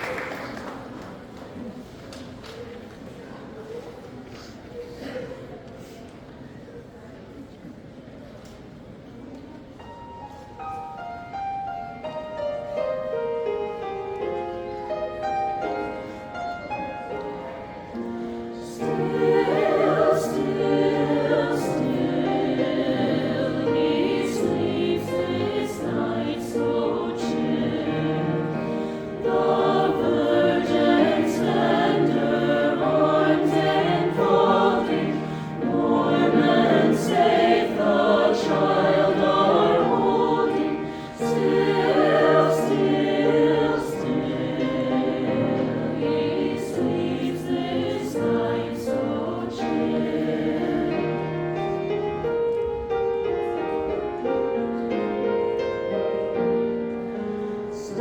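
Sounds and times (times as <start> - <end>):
choir singing: 16.8 - 52.4, 53.8 - 58.0.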